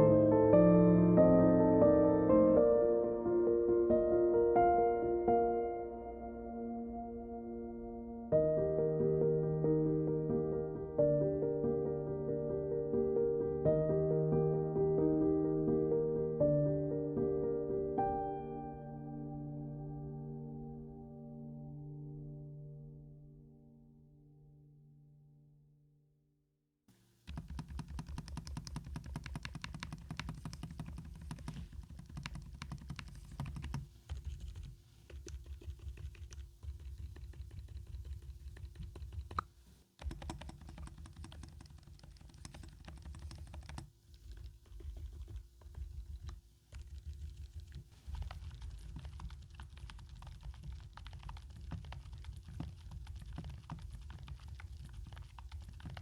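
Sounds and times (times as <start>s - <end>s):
soft keyboard typing: 27.3s - 56.0s.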